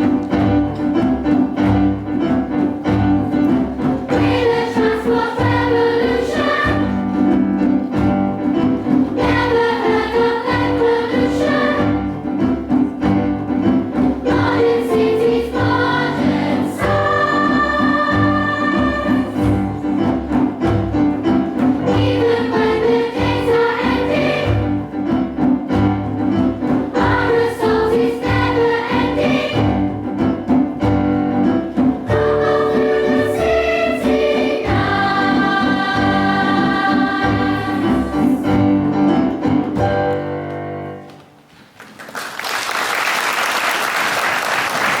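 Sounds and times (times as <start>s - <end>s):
group singing over a beat: 4.1s - 7.4s, 9.1s - 12.3s, 14.2s - 20.1s, 21.8s - 24.9s, 26.9s - 30.1s, 32.1s - 38.8s.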